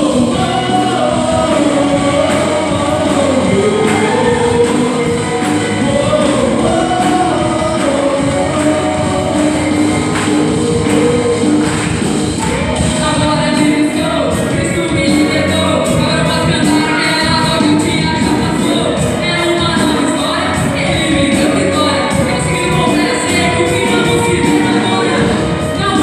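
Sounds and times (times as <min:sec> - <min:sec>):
band with steady beat: 0:00.0 - 0:26.0
voices singing together: 0:00.0 - 0:26.0.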